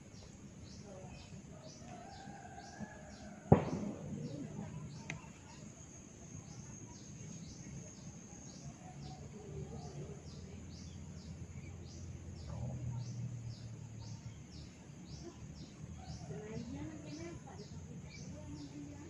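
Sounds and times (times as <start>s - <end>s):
faint click: 5.0s - 5.4s.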